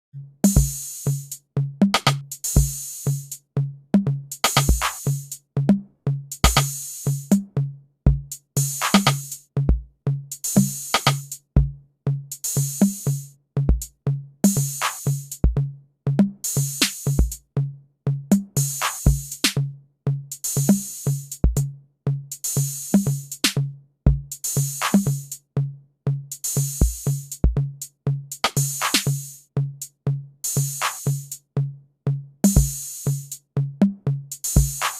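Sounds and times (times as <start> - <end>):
deep drum thumps: 8.1 - 8.3, 11.6 - 11.8, 24.1 - 24.3.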